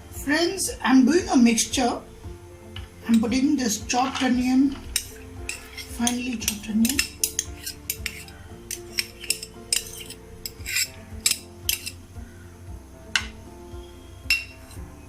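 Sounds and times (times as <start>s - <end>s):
soft background music: 0.0s - 15.0s
utensil clinking against mixing bowl: 5.0s - 12.0s.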